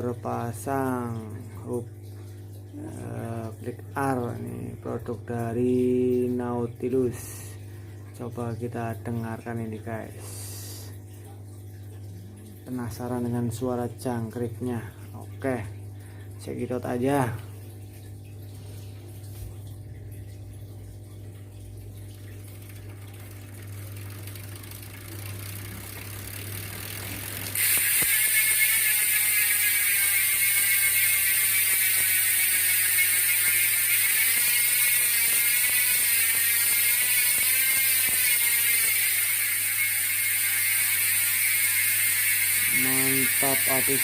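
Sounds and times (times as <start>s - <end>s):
bicycle freehub ratcheting: 23.5s - 44.0s.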